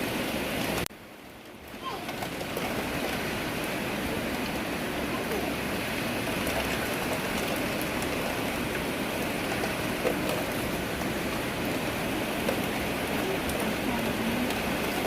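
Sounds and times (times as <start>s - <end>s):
steady rain hiss: 0.0s - 15.0s
raindrop ticks: 6.3s - 15.0s.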